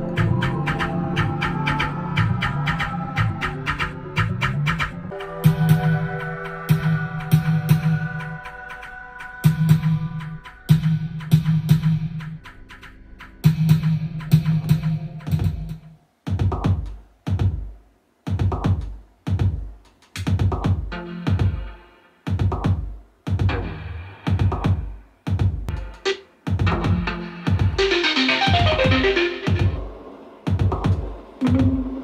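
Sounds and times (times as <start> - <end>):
electronic drum machine beat: 0.0 - 32.0
bright synth layer: 26.9 - 29.9
held low bass tone: 31.4 - 32.0.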